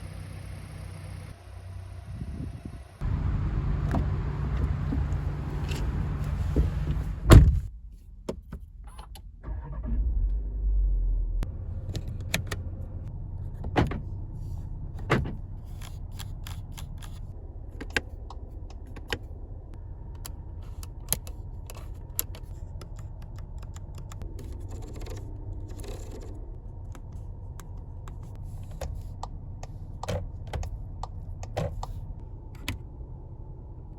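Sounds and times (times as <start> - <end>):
heavy thump: 6.6 - 7.7.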